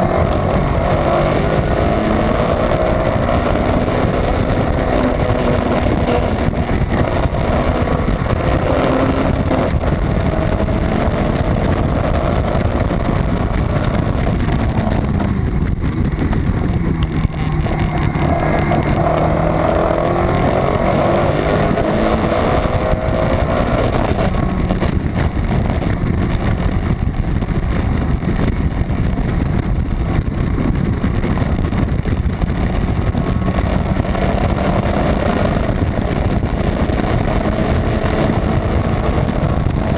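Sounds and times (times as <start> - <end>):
race car engine revving: 0.0 - 39.9
wind rushing: 0.0 - 39.9.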